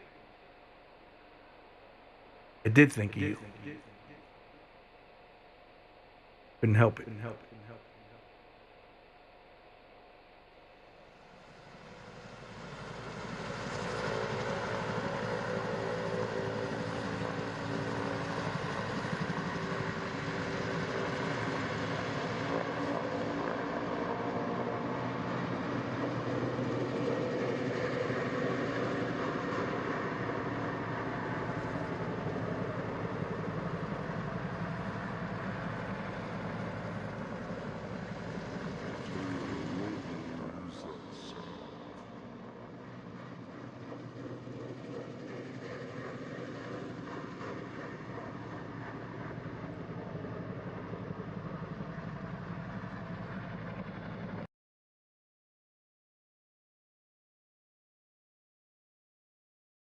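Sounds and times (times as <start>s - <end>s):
low humming tones: 0.0s - 11.4s.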